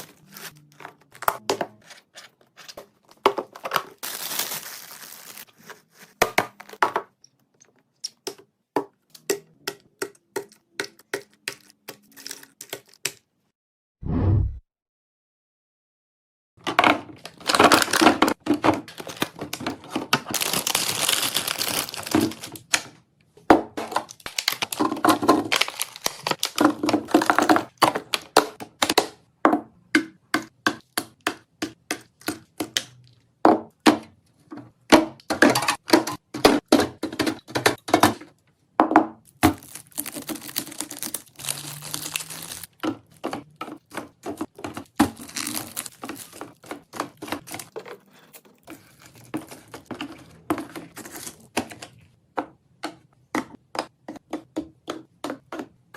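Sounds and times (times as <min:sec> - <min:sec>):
packaging rustling and crinkling: 0:00.0 - 0:01.3, 0:02.1 - 0:06.7, 0:17.2 - 0:22.8, 0:23.9 - 0:27.8, 0:39.4 - 0:42.8, 0:43.8 - 0:51.5
containers clacking and tapping: 0:23.5 - 0:55.9.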